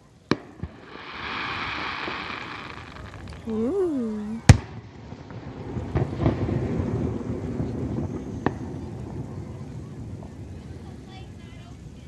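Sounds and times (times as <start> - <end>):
fireworks crackles: 0.0 - 12.0
fireworks rolling rumble: 0.0 - 12.0
fireworks bang: 0.3 - 3.8, 4.4 - 11.2.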